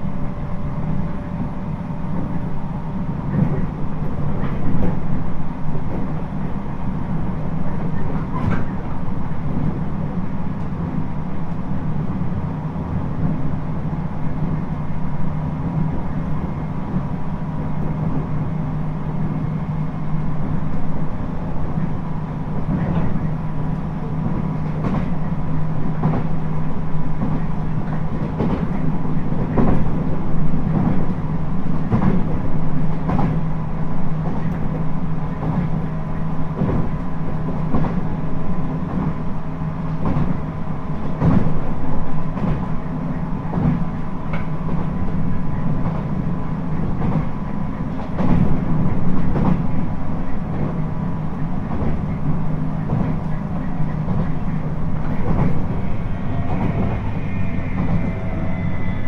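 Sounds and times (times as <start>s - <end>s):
rail-joint clicks: 0.0s - 9.9s, 22.6s - 33.5s, 36.5s - 59.0s
train low hum with tones: 0.0s - 59.0s
high whine: 53.1s - 59.0s.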